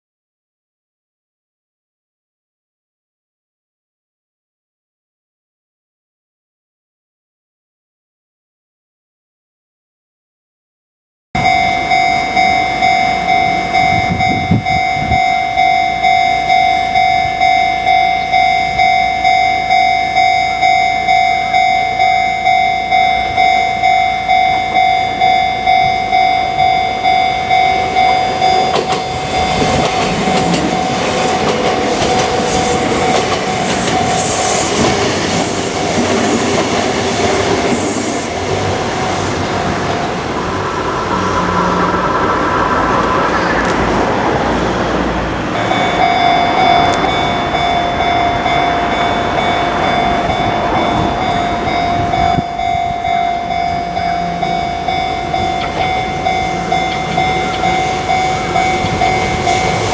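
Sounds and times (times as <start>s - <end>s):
level-crossing warning bell ringing: 11.4s - 41.7s, 45.5s - 59.9s
train passing with wheel clatter: 11.4s - 59.9s.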